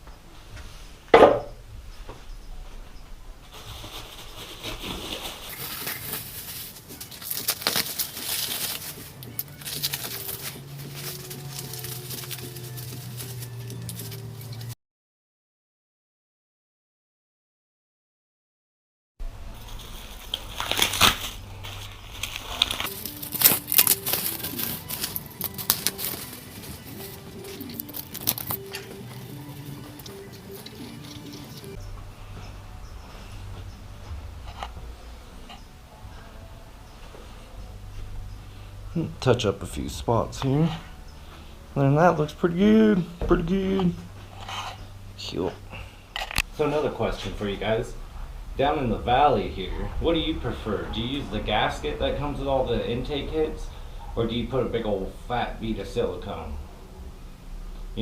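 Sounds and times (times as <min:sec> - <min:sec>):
quiet slow background music: 0:00.0 - 0:14.8, 0:19.2 - 0:58.0
sharp knock: 0:01.1 - 0:01.6
tape and paper peeled and crumpled: 0:03.5 - 0:14.7, 0:19.5 - 0:31.8.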